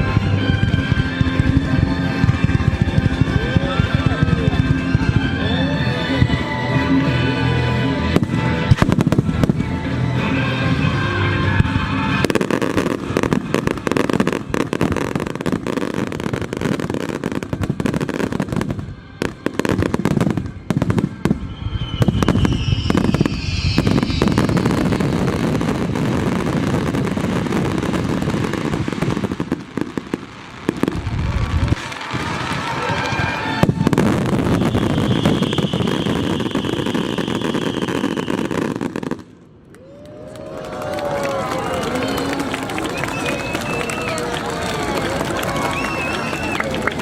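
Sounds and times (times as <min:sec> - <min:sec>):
music: 0:00.0 - 0:29.4
fireworks booming and crackling: 0:00.0 - 0:39.7.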